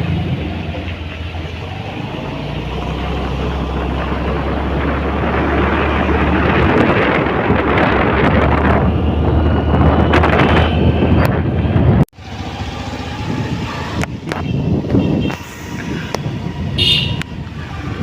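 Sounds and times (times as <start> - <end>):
road traffic: 0.0 - 18.0
vehicle running: 0.0 - 18.0
wind buffeting microphone: 0.0 - 18.0
high-pitched horn toot: 16.8 - 17.2.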